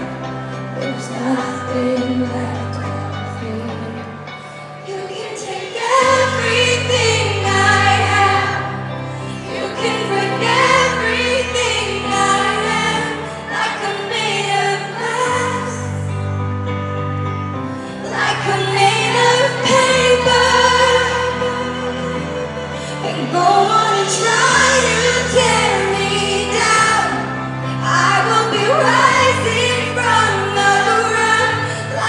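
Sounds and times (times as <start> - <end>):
person singing: 0.0 - 16.3
pop band playing: 0.0 - 32.0.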